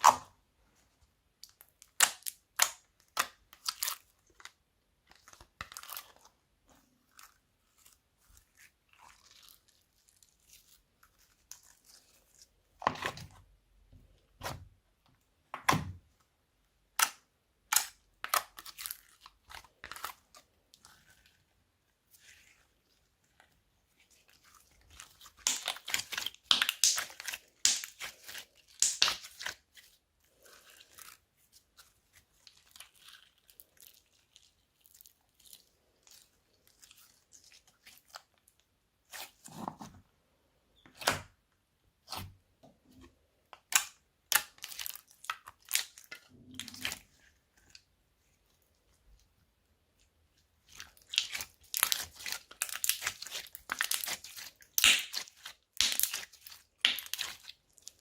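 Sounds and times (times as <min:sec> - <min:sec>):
slime squished by hand crackling: 0:24.4 - 0:29.8, 0:50.7 - 0:58.0.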